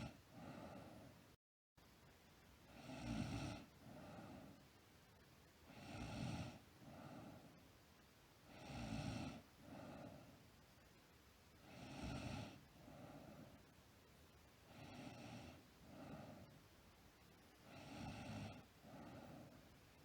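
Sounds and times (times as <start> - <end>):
girl snoring: 2.7 - 4.4, 5.7 - 6.6, 8.5 - 10.1, 11.6 - 13.0, 14.7 - 16.4, 17.7 - 19.6.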